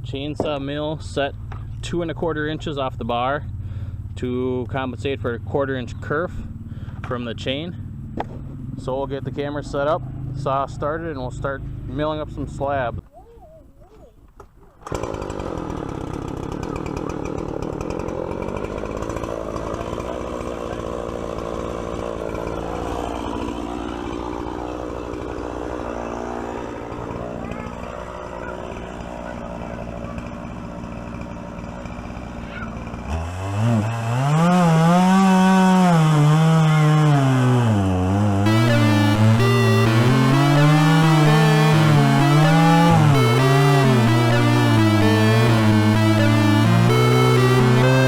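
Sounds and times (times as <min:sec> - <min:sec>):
chainsaw cutting log: 0:14.8 - 0:38.2
synthesizer-like melody: 0:38.5 - 0:48.0.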